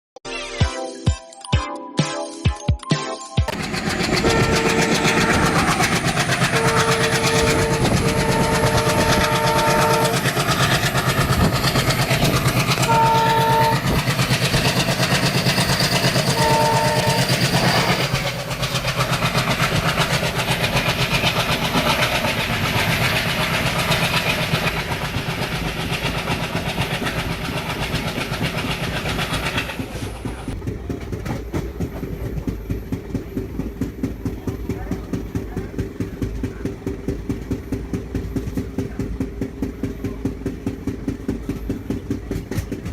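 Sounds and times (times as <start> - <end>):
two-tone locomotive horn blasts: 3.5 - 11.6, 12.4 - 14.8, 15.5 - 18.2
train wheel thudding on rails: 3.5 - 42.9
wheel and rail noise: 3.5 - 42.9.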